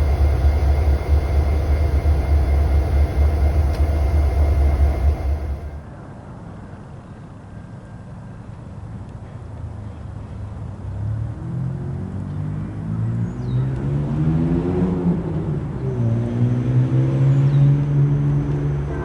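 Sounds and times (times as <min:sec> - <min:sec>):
diesel locomotive engine: 0:00.0 - 0:05.9.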